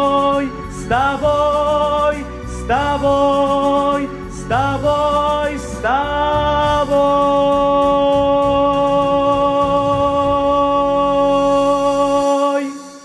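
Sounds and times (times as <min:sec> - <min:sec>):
musical accompaniment: 0:00.0 - 0:13.0
person singing long held note: 0:06.4 - 0:13.0.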